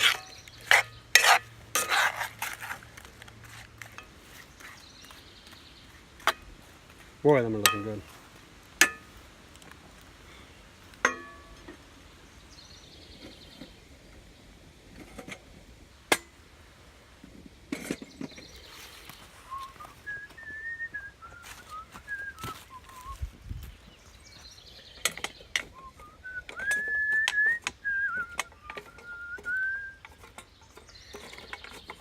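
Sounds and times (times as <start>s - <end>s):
utensil clinking on pan: 7.6s - 8.0s, 11.0s - 11.6s
wavering whistled notes: 19.4s - 23.3s, 25.7s - 30.2s.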